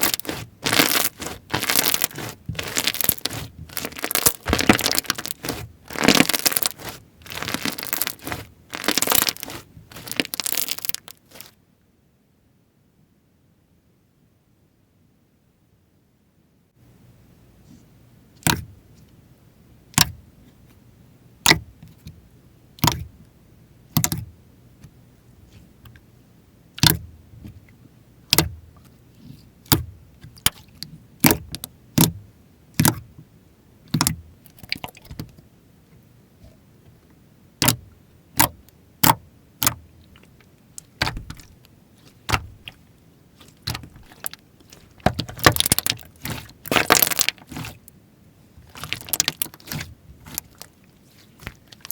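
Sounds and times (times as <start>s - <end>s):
slime squished by hand: 0.0s - 11.5s, 26.8s - 27.5s, 29.2s - 32.2s, 33.9s - 35.3s, 37.6s - 47.9s, 48.6s - 51.9s.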